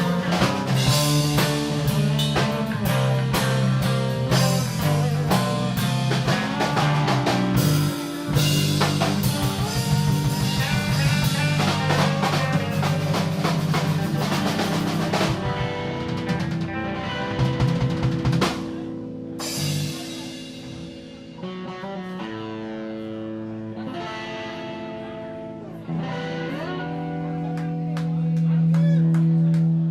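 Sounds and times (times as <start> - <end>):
drum kit rolls and fills: 0.0 - 21.7
bass guitar: 0.0 - 29.9
electric guitar: 0.0 - 29.9.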